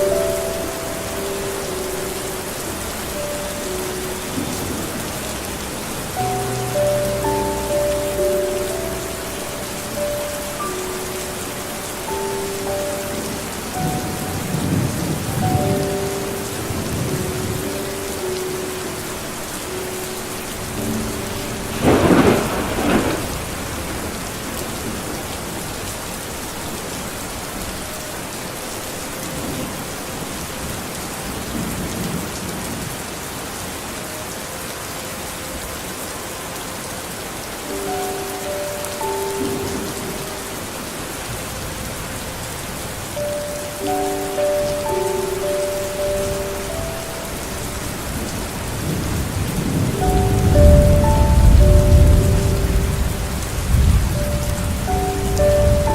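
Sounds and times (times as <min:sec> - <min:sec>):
steady rain: 0:00.0 - 0:55.9
thunder rolling: 0:21.2 - 0:25.6
sharp thunderclap: 0:21.7 - 0:24.1.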